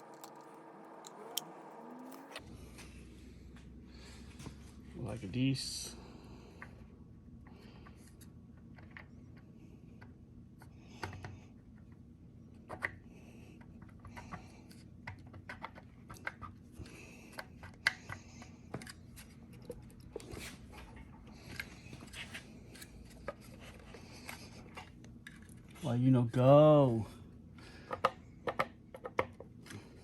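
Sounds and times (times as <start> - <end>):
small metal parts clicking: 0.0 - 2.2
steady low hum: 0.0 - 30.0.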